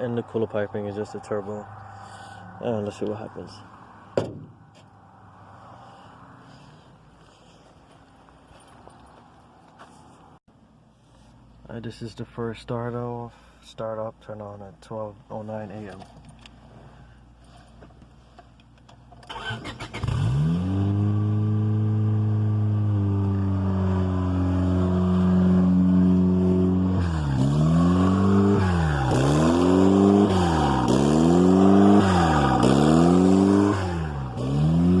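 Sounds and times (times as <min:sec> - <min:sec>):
turbocharged car engine revving: 0:19.3 - 0:35.0.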